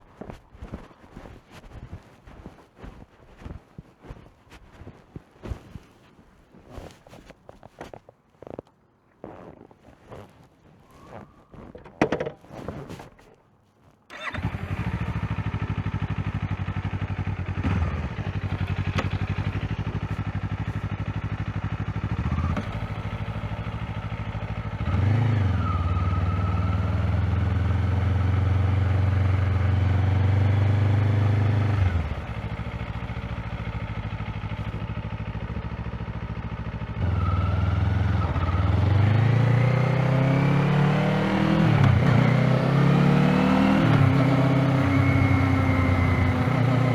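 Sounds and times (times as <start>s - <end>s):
motorcycle engine running: 14.1s - 46.9s.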